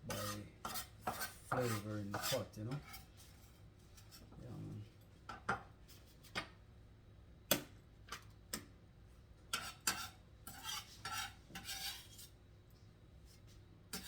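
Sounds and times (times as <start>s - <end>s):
utensil scraping pot: 0.0s - 4.4s, 9.5s - 12.4s.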